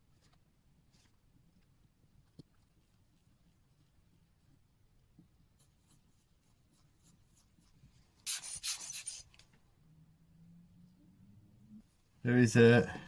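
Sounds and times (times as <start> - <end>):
loud scratchy rubbing: 8.2 - 9.3.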